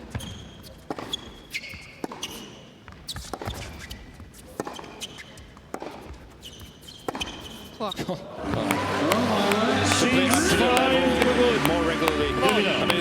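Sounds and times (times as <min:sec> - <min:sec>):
shoes squeaking on court: 0:00.0 - 0:08.7
racket hitting ball: 0:08.4 - 0:13.0.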